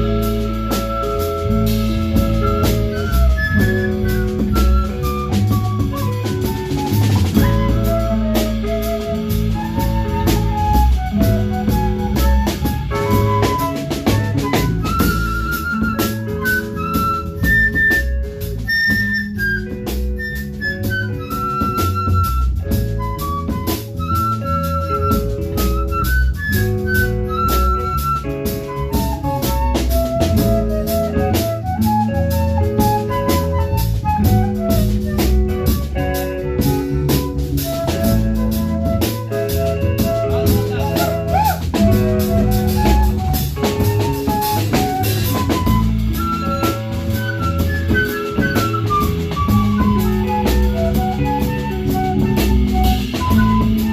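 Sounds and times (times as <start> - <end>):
bass line: 0.0 - 53.9
drum kit beat: 0.0 - 53.9
live band music: 0.0 - 53.9
melodic lead line: 0.0 - 53.9.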